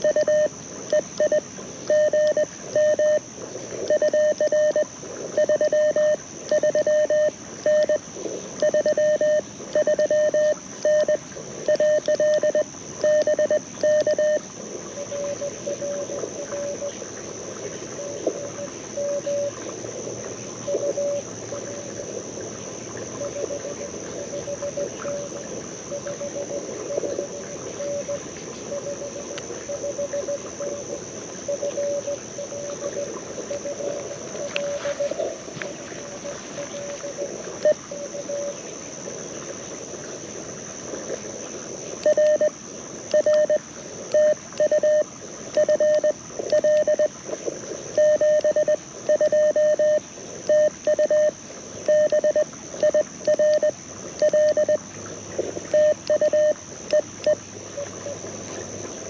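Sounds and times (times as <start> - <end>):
morse code tones: 0.0 - 3.3, 3.9 - 8.0, 8.6 - 14.4, 15.0 - 16.9, 18.0 - 19.6, 20.7 - 21.8, 23.2 - 30.8, 31.4 - 38.6, 42.0 - 45.0, 45.6 - 47.1, 48.0 - 54.8, 55.7 - 57.4
insects buzzing: 0.0 - 59.0
receiver hiss: 0.0 - 59.0.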